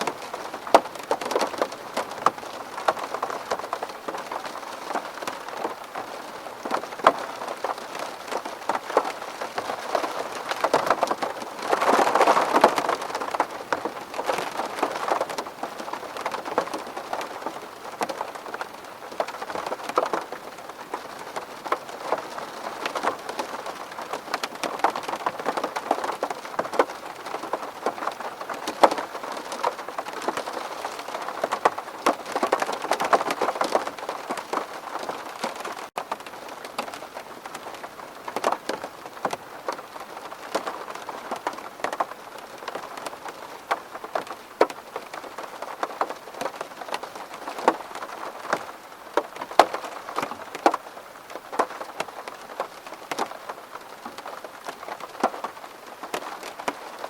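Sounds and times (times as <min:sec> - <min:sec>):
rain drops tapping on window: 0:00.0 - 0:57.0
rain water wash: 0:00.0 - 0:57.0.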